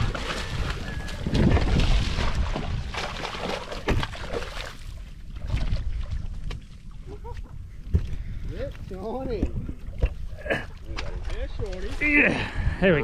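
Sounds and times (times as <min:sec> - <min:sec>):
water sloshing: 0:00.0 - 0:12.4
wind buffeting the microphone: 0:00.0 - 0:13.0.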